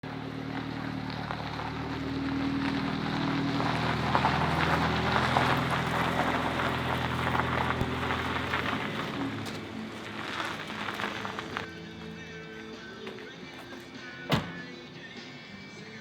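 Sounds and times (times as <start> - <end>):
car engine idling: 0.0 - 16.0
rain falling: 0.6 - 9.2.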